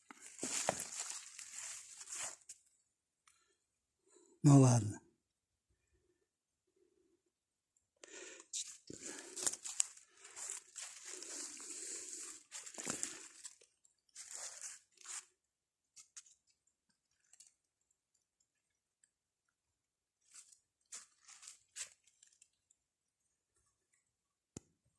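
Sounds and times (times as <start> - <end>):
crunching and rustling: 0.0 - 2.5, 9.0 - 15.3, 20.2 - 22.5.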